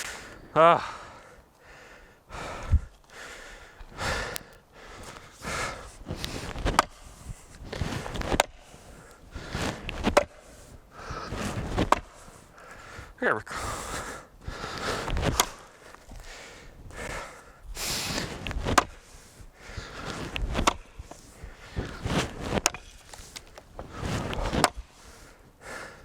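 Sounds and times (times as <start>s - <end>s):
person breathing hard: 0.0s - 22.1s, 23.2s - 26.0s
axe chopping log: 6.7s - 7.0s, 8.3s - 8.6s, 10.0s - 10.4s, 11.8s - 12.1s, 15.2s - 15.6s, 18.6s - 19.0s, 20.6s - 20.8s, 22.6s - 22.8s.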